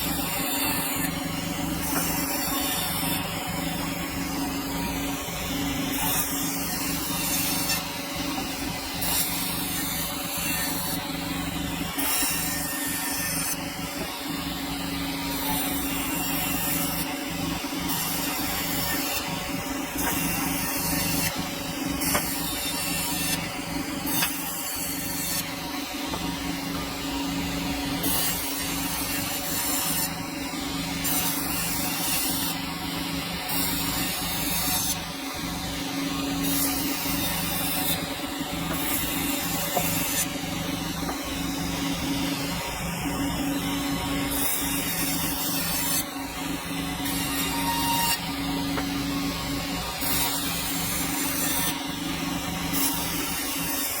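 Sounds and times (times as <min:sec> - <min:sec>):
saw blade rasping through log: 0:36.1 - 0:41.2.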